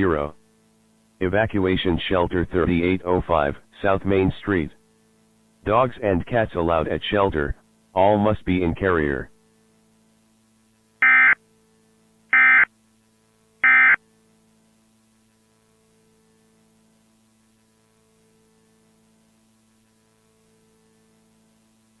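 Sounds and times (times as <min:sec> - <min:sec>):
faint steady hum: 0:00.0 - 0:22.0
alert data tone bursts: 0:11.0 - 0:11.4, 0:12.3 - 0:12.7, 0:13.6 - 0:14.0.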